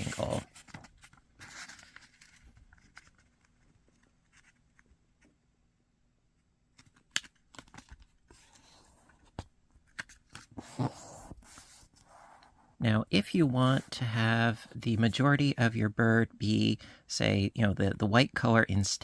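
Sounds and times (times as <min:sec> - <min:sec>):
paper rustling: 0:00.0 - 0:05.3.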